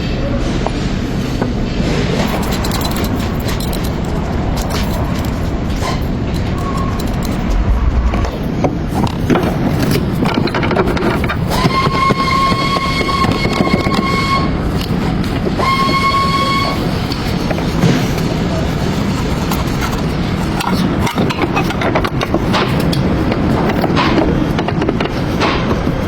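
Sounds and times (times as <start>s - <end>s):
car road noise: 1.5s - 11.6s.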